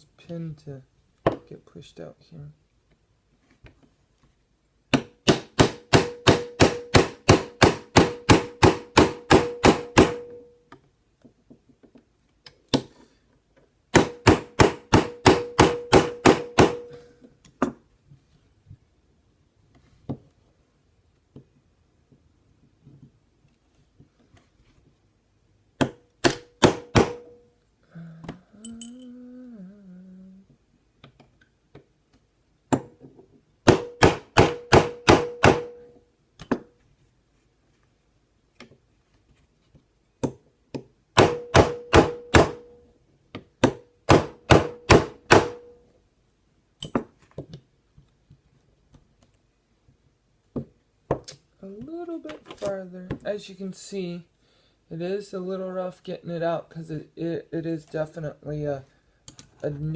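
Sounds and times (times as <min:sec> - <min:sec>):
person humming: 0:27.8 - 0:30.6.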